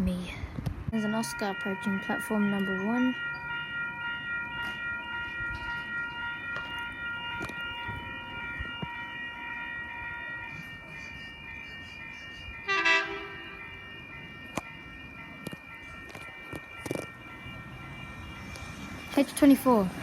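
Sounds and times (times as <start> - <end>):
electric train whining: 0.6 - 20.0
train horn blast: 12.7 - 13.6.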